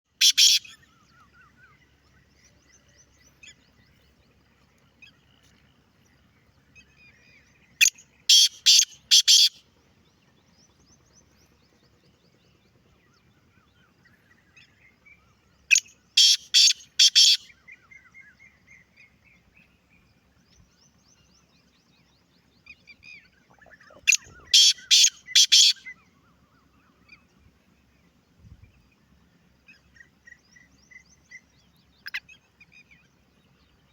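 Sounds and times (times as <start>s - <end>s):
francolin harsh grating calls: 0.2s - 0.7s, 8.3s - 9.6s, 16.2s - 17.4s, 23.7s - 25.9s
small birds chirping: 14.6s - 19.8s, 20.5s - 27.3s.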